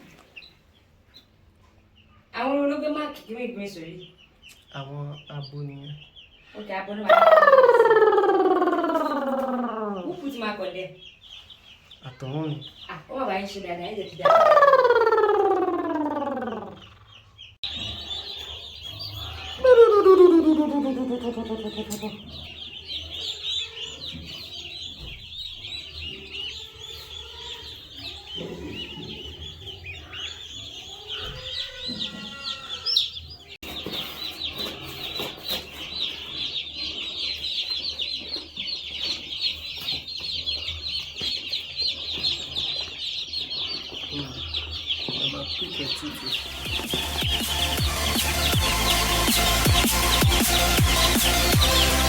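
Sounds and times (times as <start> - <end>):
chicks peeping: 0.0 - 52.0
loud falling tone: 19.6 - 22.2.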